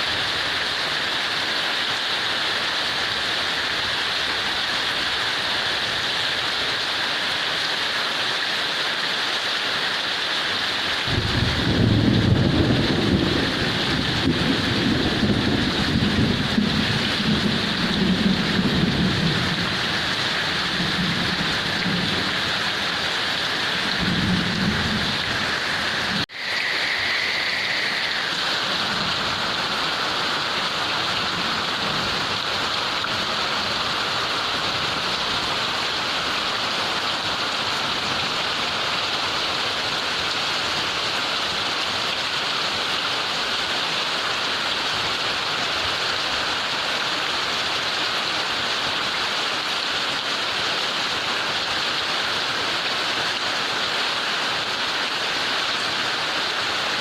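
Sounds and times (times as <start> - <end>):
heavy rain falling: 0.0 - 57.0
thunder rumbling: 11.0 - 26.3.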